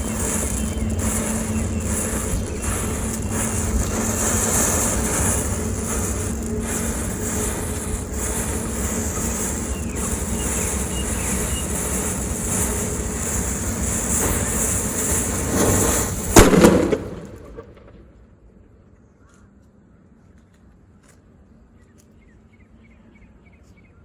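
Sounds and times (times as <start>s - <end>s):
firework fountain hissing: 0.0s - 18.2s
sharp bang: 12.6s - 18.2s.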